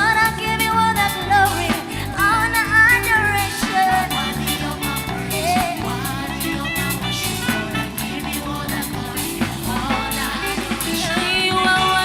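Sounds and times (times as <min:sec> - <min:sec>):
worship band playing: 0:00.0 - 0:12.0
people singing praise chorus: 0:03.6 - 0:12.0.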